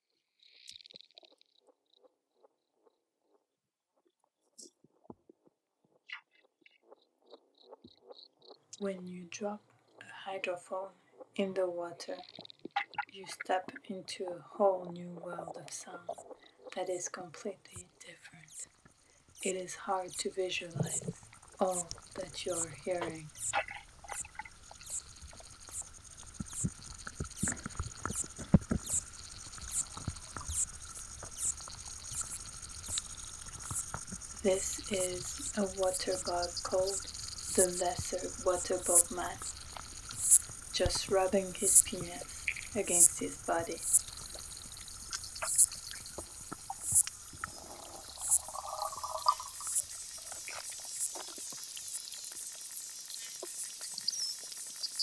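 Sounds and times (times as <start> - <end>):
high falling insect chirps underwater: 18.4 - 55.0
clicks and ticks: 20.1 - 55.0
low buzzing: 20.2 - 52.4.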